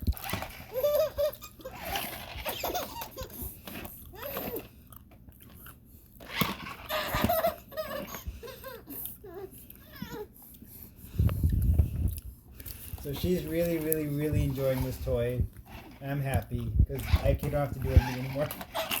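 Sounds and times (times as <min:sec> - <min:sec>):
baby laughing and giggling: 0:00.3 - 0:04.6, 0:06.8 - 0:10.4.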